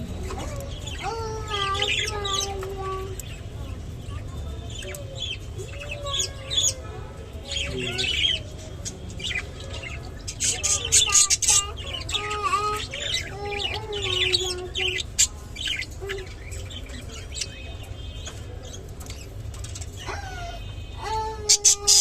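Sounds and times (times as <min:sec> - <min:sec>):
budgerigars chirping and warbling: 0:00.0 - 0:22.0.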